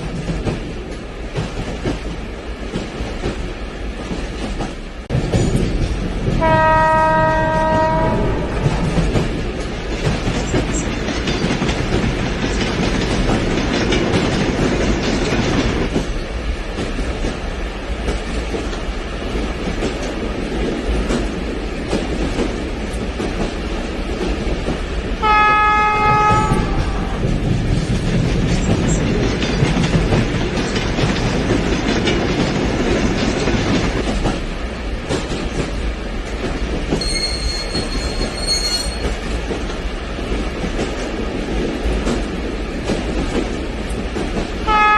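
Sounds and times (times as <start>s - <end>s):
model train rumble and wheel clatter: 0.0s - 44.9s
train horn: 6.4s - 9.0s, 25.2s - 27.2s, 44.6s - 44.9s.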